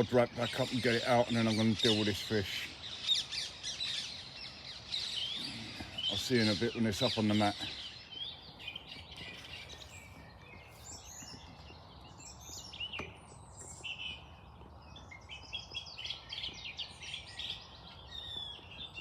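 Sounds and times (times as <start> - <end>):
flock of parakeets calling: 0.0 - 10.0.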